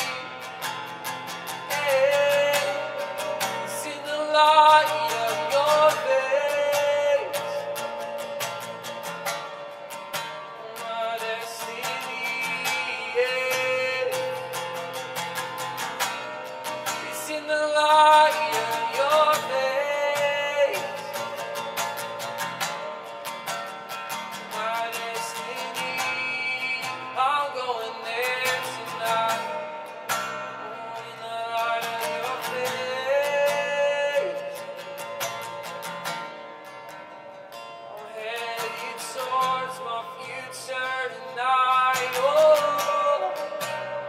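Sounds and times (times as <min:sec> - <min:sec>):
strummed acoustic guitar: 0:00.0 - 0:44.0
person singing: 0:01.4 - 0:09.0, 0:10.6 - 0:14.9, 0:16.8 - 0:21.8, 0:30.6 - 0:35.2, 0:37.9 - 0:44.0.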